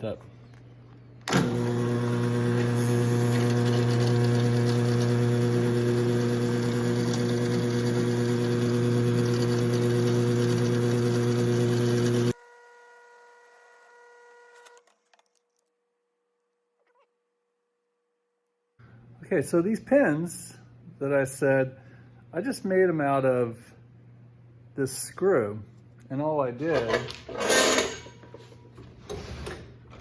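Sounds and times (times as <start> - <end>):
drill press boring wood: 1.3 - 14.8.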